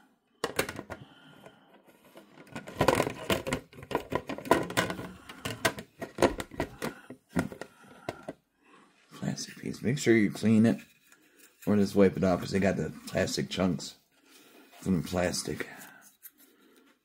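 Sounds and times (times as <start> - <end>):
plastic parts clicking and rattling: 0.4 - 1.1, 1.8 - 8.4.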